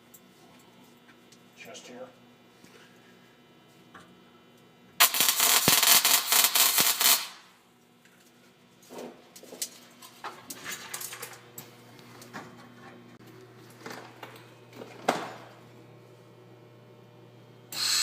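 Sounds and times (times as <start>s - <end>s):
welding arc crackling: 5.0s - 7.6s, 17.7s - 18.0s.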